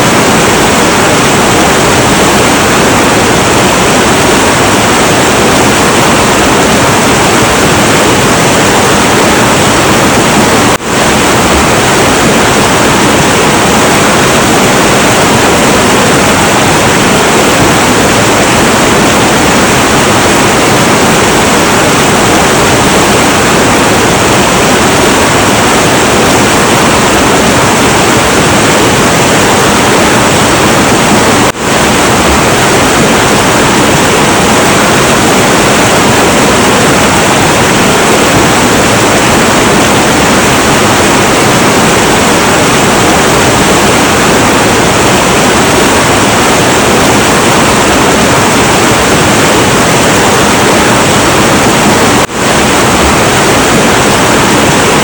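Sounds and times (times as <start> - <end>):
river water rushing: 0.0 - 55.0.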